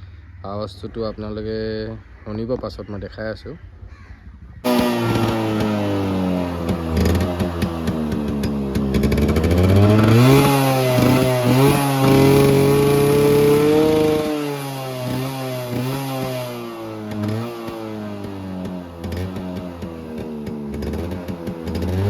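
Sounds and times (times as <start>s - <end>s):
two-stroke motorcycle engine revving: 4.7s - 22.0s.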